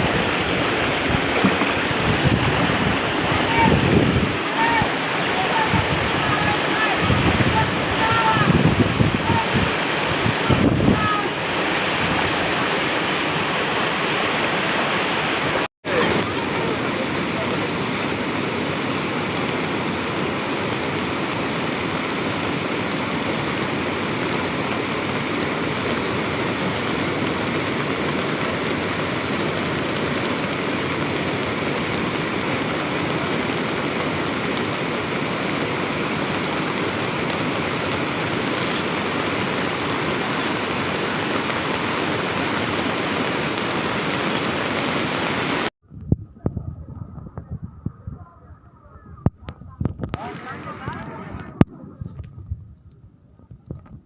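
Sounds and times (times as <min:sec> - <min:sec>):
rushing floodwater roar: 0:00.0 - 0:45.7, 0:50.0 - 0:51.6.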